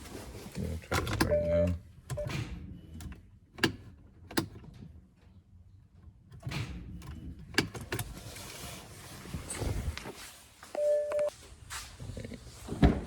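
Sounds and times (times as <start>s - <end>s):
shuffling handling noise: 0.0s - 0.9s, 8.1s - 12.8s.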